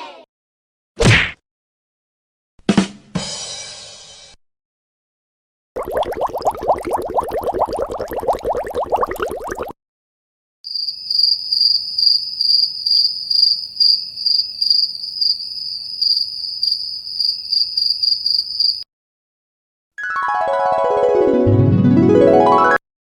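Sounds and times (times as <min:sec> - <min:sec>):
crickets chirping: 0:10.7 - 0:18.8.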